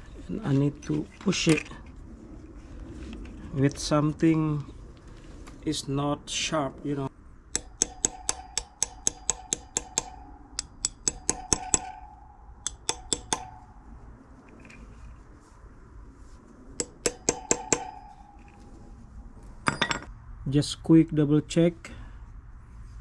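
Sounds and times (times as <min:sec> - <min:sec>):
hammer tapping on metal: 0:07.5 - 0:13.8, 0:16.8 - 0:18.6.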